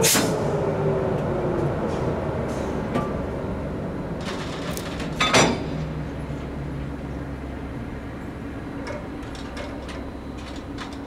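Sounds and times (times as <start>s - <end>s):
train rumbling: 0.0s - 11.0s.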